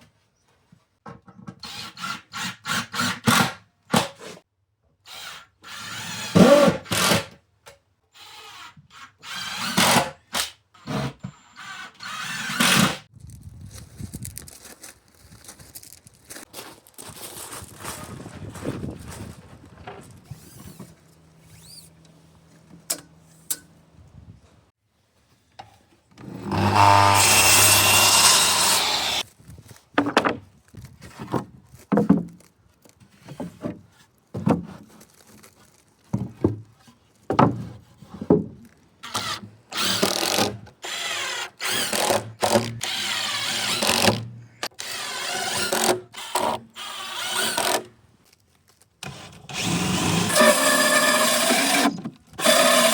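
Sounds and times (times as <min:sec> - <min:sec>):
power drill bursts: 0:10.8 - 0:13.0, 0:26.4 - 0:29.2, 0:39.0 - 0:47.8, 0:49.1 - 0:52.9.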